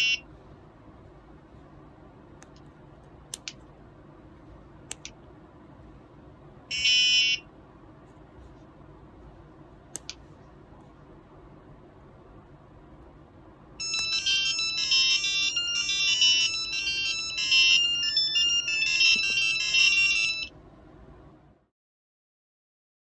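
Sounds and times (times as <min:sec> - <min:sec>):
piezo buzzer beeping melody: 0:13.8 - 0:20.5.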